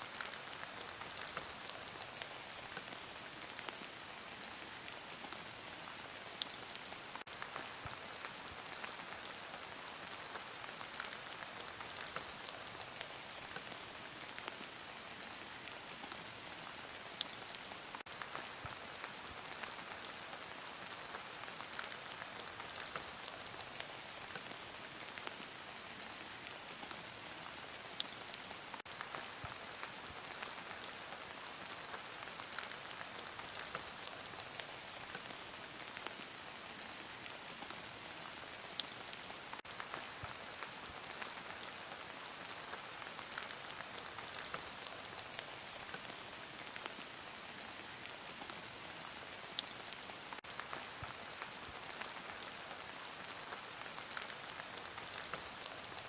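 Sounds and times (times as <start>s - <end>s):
heavy rain falling: 37.7s - 56.0s.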